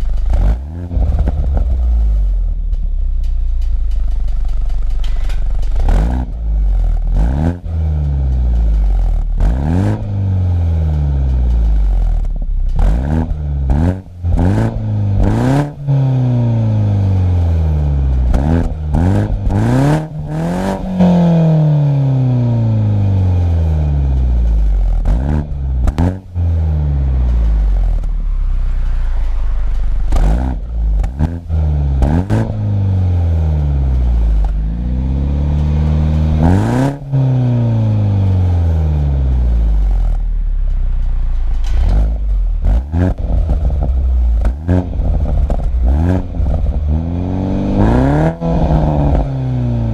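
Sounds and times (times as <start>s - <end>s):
exhaust pops and crackles: 0.0s - 49.9s
car engine revving hard: 5.8s - 7.9s, 9.4s - 10.8s, 12.7s - 24.1s, 24.9s - 27.2s, 30.0s - 40.2s, 41.6s - 49.9s.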